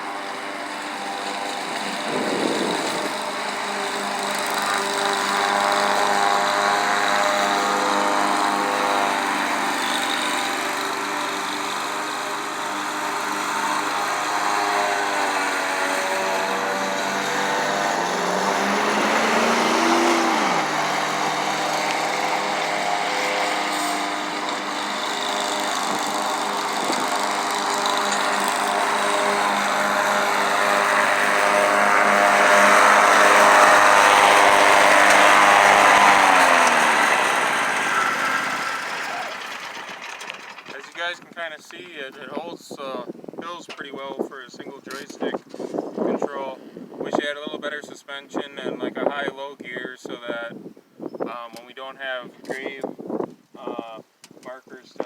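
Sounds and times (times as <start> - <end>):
riding mower engine drone: 0.0 - 41.0.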